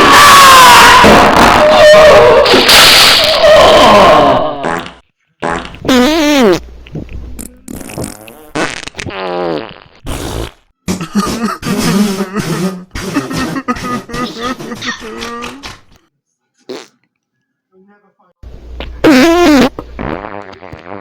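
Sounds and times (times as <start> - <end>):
fart sounds: 4.6 - 14.0, 16.7 - 17.0, 18.8 - 21.0.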